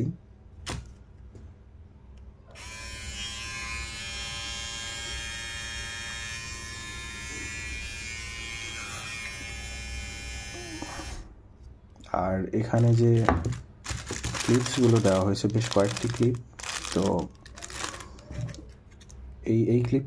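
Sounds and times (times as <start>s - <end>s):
hair trimmer buzzing: 2.6s - 11.2s.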